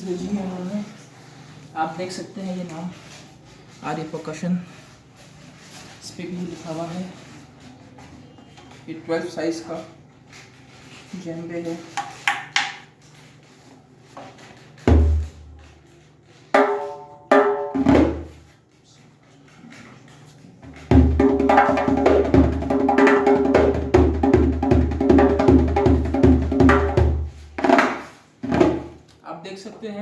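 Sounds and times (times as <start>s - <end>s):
djembe played by hand: 14.9s - 15.5s, 16.6s - 18.4s, 20.6s - 29.0s.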